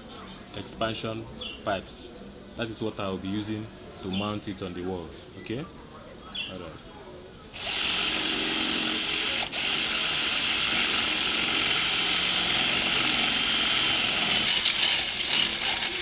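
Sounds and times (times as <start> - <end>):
electric drill boring into wall: 7.6 - 16.0.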